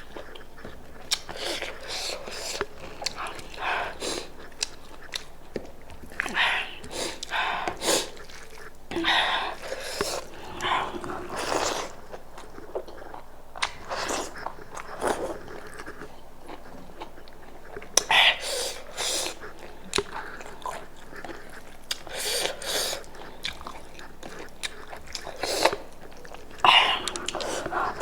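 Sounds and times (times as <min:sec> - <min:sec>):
person biting and chewing meat: 0:00.1 - 0:28.0
wet smacks: 0:12.8 - 0:15.0.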